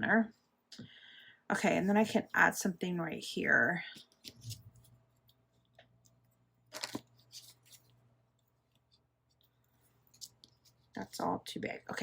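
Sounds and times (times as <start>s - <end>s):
paper rustling and clicking: 6.7s - 8.0s.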